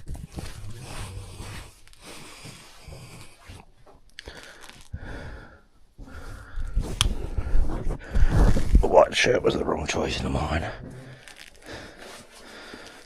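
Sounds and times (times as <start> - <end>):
person breathing hard: 0.2 - 3.4, 4.2 - 8.8, 10.9 - 13.0.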